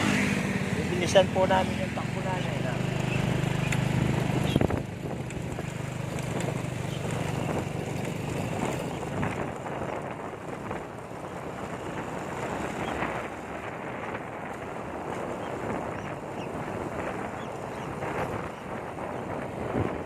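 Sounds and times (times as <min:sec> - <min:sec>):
engine hum: 0:00.0 - 0:20.0
wind buffeting microphone: 0:00.0 - 0:20.0.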